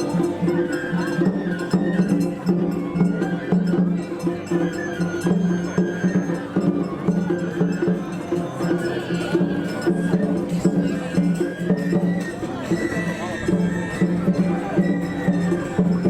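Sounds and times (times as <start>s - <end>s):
festival music in the street: 0.0s - 16.0s.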